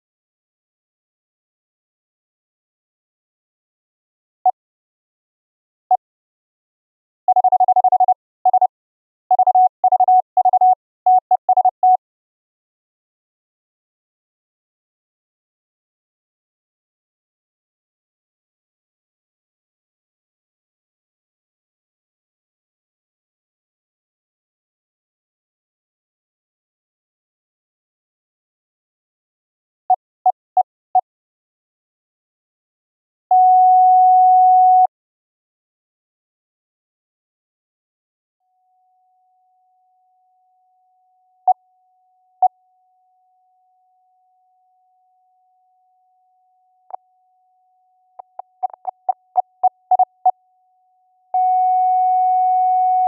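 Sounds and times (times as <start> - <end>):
morse code sine tone beeps: 7.3 - 8.7, 9.3 - 12.0, 51.4 - 53.0.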